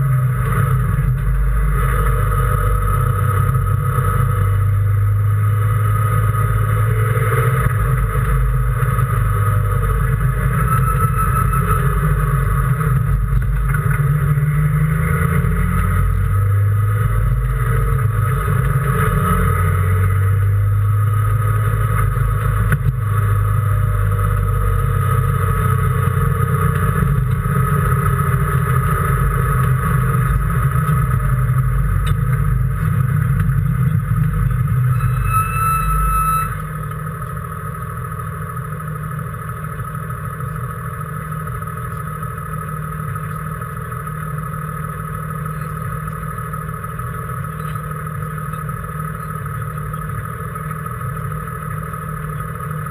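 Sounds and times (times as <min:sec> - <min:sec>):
racing car engine revving: 0:00.0 - 0:37.4.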